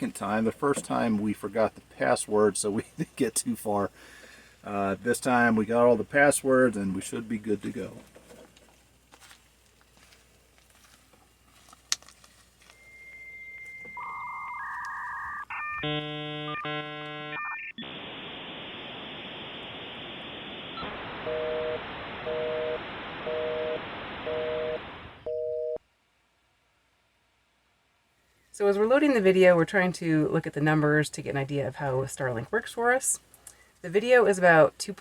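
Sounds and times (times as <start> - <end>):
dial-up modem handshake: 13.7 - 17.7.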